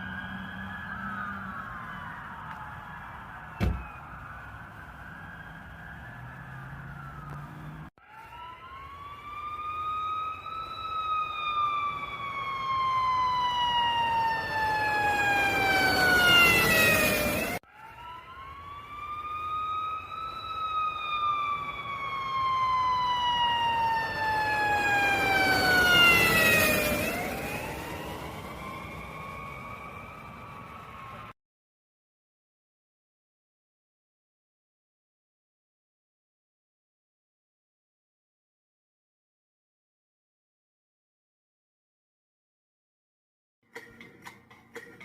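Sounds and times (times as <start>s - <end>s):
siren wailing: 0.0s - 31.4s.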